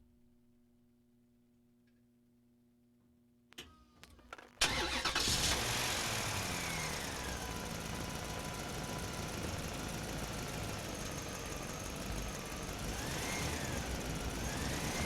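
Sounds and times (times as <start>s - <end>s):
engine starting and running: 4.6s - 15.0s.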